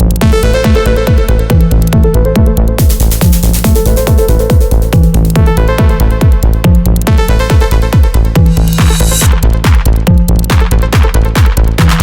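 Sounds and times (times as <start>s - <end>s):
kick drum beat: 0.0s - 12.0s
ticking hi-hats: 0.0s - 12.0s
repeating synth line: 2.8s - 9.4s
bright hiss: 8.4s - 9.3s.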